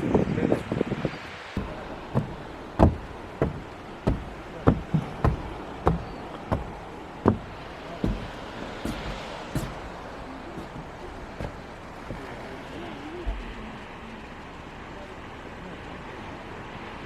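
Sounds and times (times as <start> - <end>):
faint steady background noise: 0.3 - 17.0
sharp knocks on hard surface: 1.6 - 9.8.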